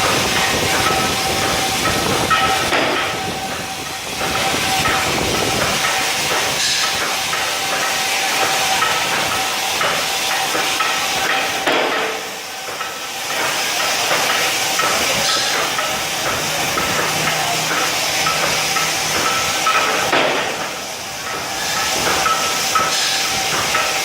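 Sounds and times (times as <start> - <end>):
plasma torch hissing: 0.0 - 24.0
thin steady whine: 0.0 - 24.0.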